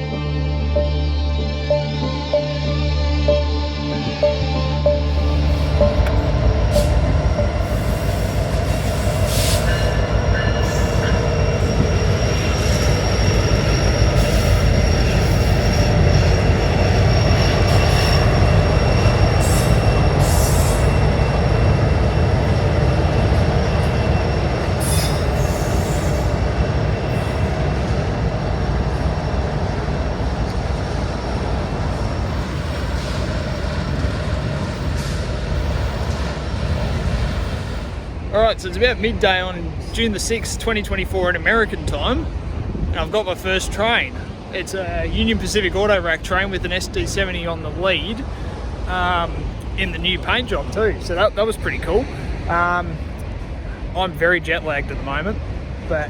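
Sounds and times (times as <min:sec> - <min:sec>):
freight train rumbling past: 0:00.0 - 0:56.0
high wheel squeal: 0:04.0 - 0:37.9.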